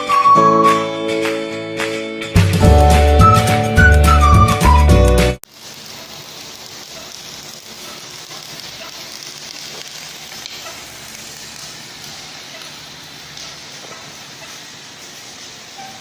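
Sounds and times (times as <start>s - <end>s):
welding arc crackling: 5.4s - 16.0s.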